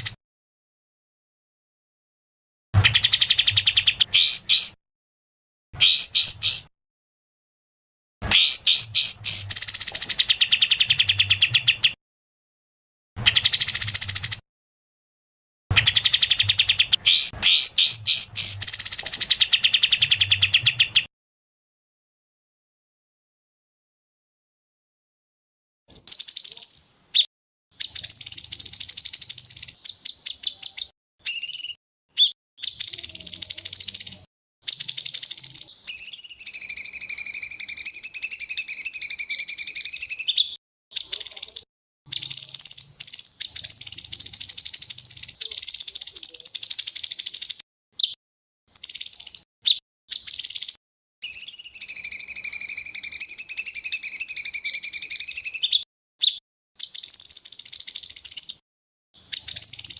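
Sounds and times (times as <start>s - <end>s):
recorded songbird trills and whistles: 2.8s - 4.8s, 5.8s - 6.7s, 8.3s - 12.0s, 13.2s - 14.4s, 15.7s - 21.1s, 25.9s - 58.6s, 59.2s - 59.9s.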